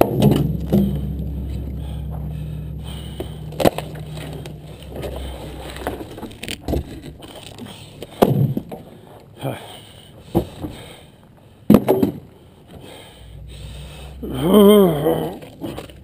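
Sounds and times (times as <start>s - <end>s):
dull thuds: 0.0s - 8.9s
engine running: 0.0s - 16.0s.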